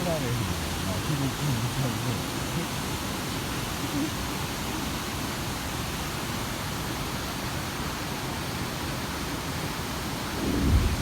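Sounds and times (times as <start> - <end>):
flowing falling water: 0.0 - 11.0
low rumble: 10.4 - 11.0.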